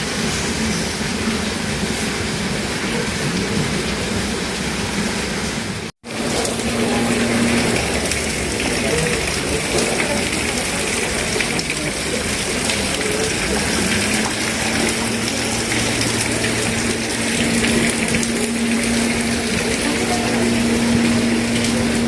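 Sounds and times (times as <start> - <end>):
rushing water: 0.0 - 22.0
low steady hum: 6.1 - 9.4, 13.0 - 22.0.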